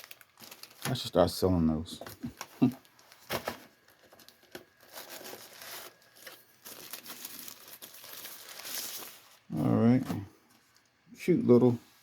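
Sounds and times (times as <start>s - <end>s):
packaging crinkling and rustling: 0.0s - 9.7s.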